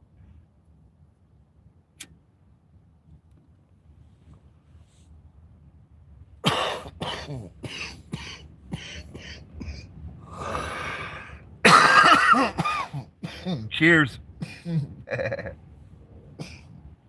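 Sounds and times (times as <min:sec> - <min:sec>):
man clearing his throat: 0:06.4 - 0:09.8, 0:11.6 - 0:13.7, 0:14.4 - 0:15.6, 0:16.4 - 0:16.7
man coughing: 0:06.4 - 0:09.8, 0:11.6 - 0:13.8, 0:14.4 - 0:15.6, 0:16.4 - 0:16.7.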